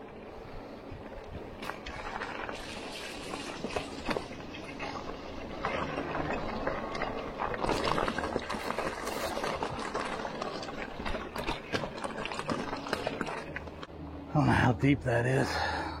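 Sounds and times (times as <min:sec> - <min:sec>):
bike tyres rolling through mud: 0:00.0 - 0:13.9
mud splashes and squelches: 0:01.6 - 0:13.9.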